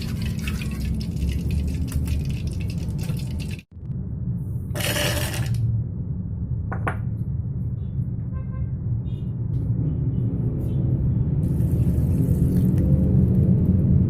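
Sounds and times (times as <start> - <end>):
low rumble: 3.7 - 4.8.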